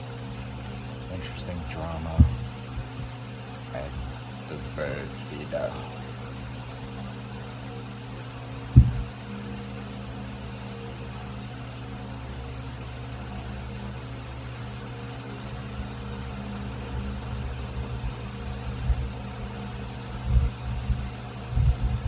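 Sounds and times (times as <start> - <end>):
low machine hum: 0.0 - 22.0
low thumps: 2.1 - 3.1, 8.7 - 9.2.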